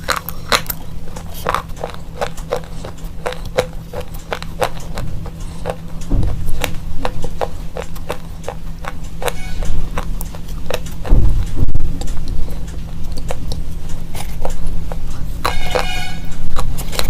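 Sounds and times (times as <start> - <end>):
slate pencil being chewed: 0.0 - 17.0
dull low thuds: 4.3 - 8.9, 9.7 - 12.5.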